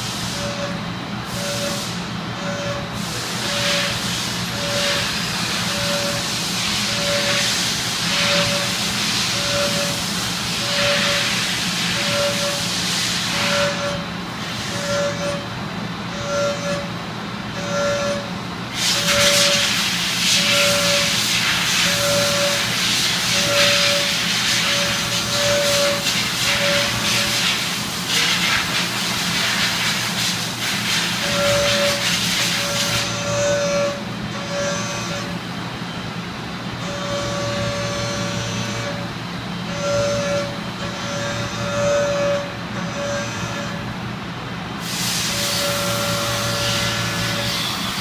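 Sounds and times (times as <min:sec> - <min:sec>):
machine tool hum: 0:00.0 - 0:48.0
short cutter tone: 0:00.4 - 0:06.3, 0:08.1 - 0:10.0, 0:10.6 - 0:14.1, 0:14.7 - 0:16.9, 0:18.9 - 0:22.7, 0:31.2 - 0:36.0.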